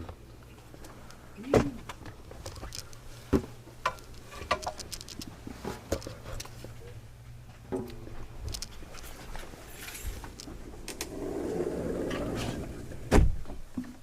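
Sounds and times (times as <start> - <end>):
steady low hum: 0.0 - 14.0
clicks and knocks of handling: 1.8 - 6.7.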